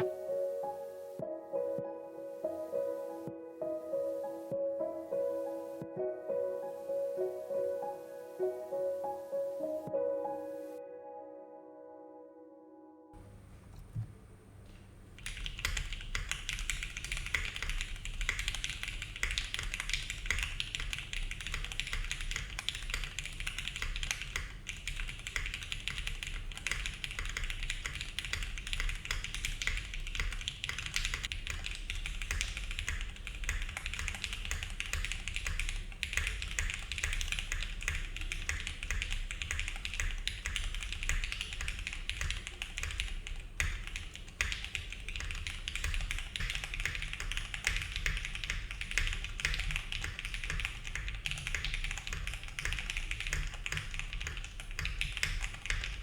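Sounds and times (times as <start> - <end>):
fast mechanical keyboard typing: 15.2 - 56.0.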